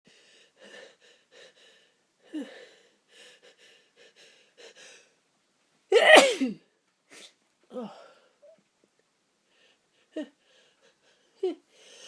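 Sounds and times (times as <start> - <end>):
person wheezy breaths and gasps: 0.1 - 5.2, 9.5 - 12.0
person sneezing: 5.9 - 8.0.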